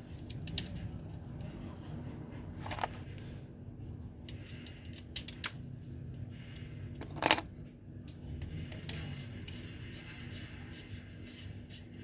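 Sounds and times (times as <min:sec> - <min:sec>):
tools clicking and knocking: 0:02.6 - 0:03.0, 0:07.0 - 0:07.5.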